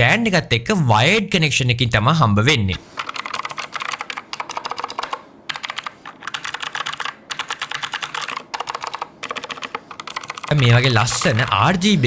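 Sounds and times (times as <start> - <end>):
clicky mechanical keyboard typing: 3.0 - 12.0.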